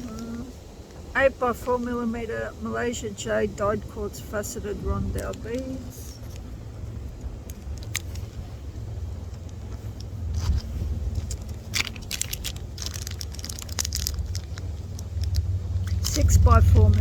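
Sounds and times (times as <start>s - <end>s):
low rumble: 0.0s - 17.0s
bead packet crinkling and clicking: 7.4s - 8.2s, 9.3s - 17.0s.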